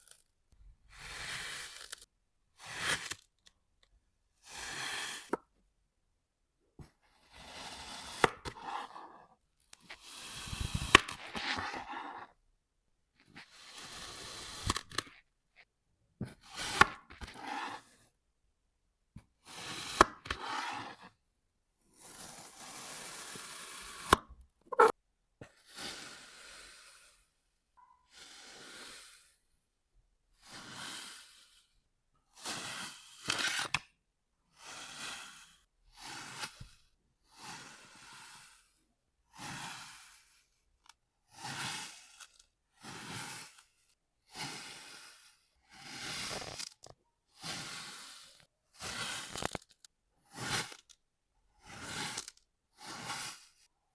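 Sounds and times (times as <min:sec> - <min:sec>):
sand being sliced: 0:00.9 - 0:03.3, 0:04.4 - 0:05.4, 0:07.2 - 0:09.2, 0:09.8 - 0:12.2, 0:13.4 - 0:15.1, 0:16.3 - 0:18.0, 0:19.4 - 0:21.1, 0:22.0 - 0:24.9, 0:25.6 - 0:27.2, 0:28.1 - 0:29.4, 0:30.4 - 0:31.6, 0:32.4 - 0:33.8, 0:34.6 - 0:36.8, 0:37.4 - 0:38.7, 0:39.4 - 0:40.4, 0:41.3 - 0:43.7, 0:44.3 - 0:49.7, 0:50.3 - 0:50.9, 0:51.6 - 0:53.6.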